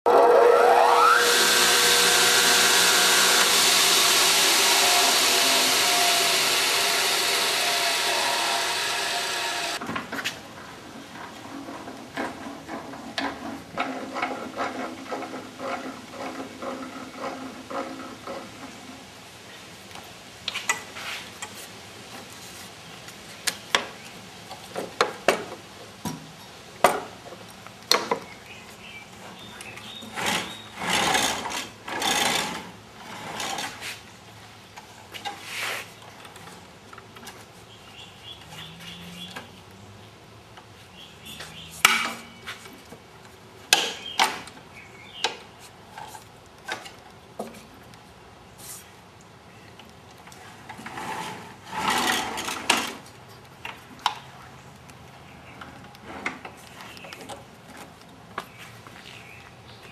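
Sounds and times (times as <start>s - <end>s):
scraping and rubbing: 35.4s - 36.0s.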